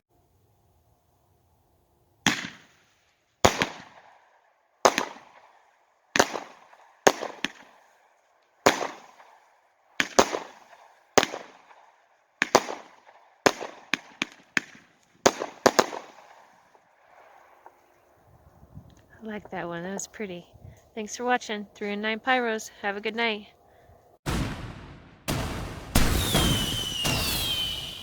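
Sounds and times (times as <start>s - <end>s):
firework reports: 24.3s - 28.0s.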